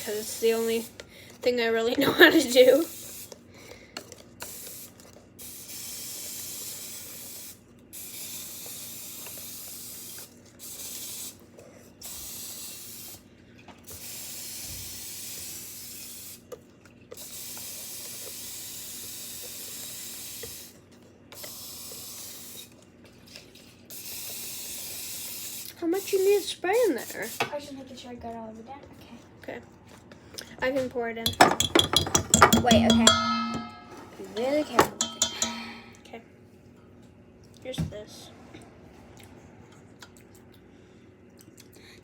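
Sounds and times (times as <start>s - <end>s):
aerosol spray can hissing: 2.5s - 3.3s.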